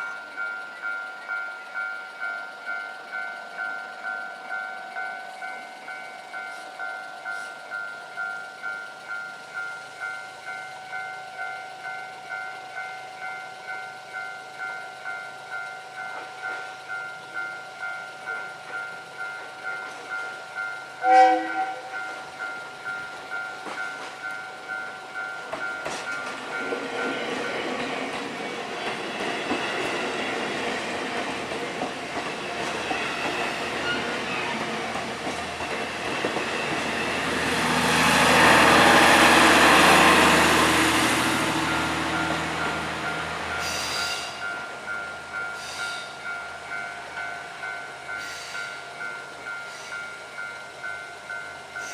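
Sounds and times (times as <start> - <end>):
level crossing warning bell: 0.0 - 51.9
passing train noise: 0.0 - 51.9
train horn blast: 21.0 - 22.1.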